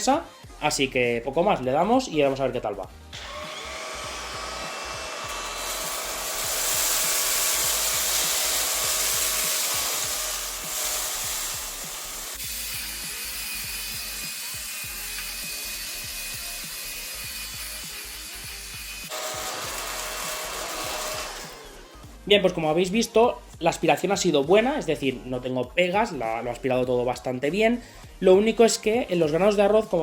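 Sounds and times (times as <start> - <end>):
stick vacuum whine and hiss: 3.2 - 22.1.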